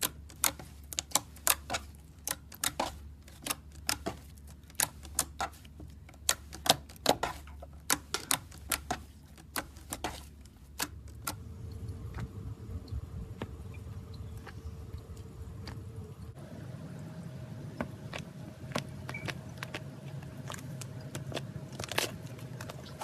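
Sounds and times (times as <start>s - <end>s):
steady hum: 0.0s - 23.0s
low rumble: 11.2s - 23.0s.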